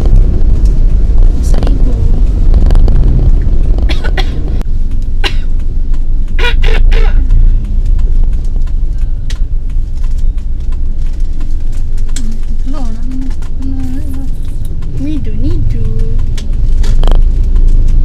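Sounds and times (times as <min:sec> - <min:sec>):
car cabin rumble: 0:00.0 - 0:18.0
person coughing: 0:03.9 - 0:04.4, 0:05.2 - 0:05.5, 0:06.4 - 0:07.3.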